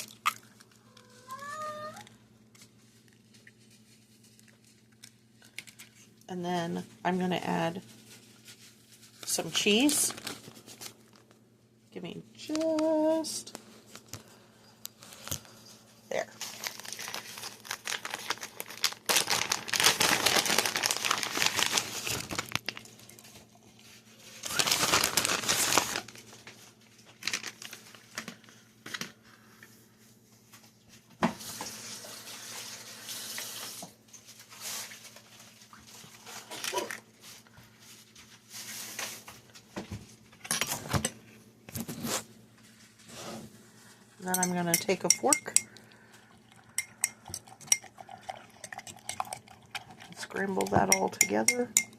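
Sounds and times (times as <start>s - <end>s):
plastic bag crinkling: 7.7s - 11.4s, 15.0s - 28.6s.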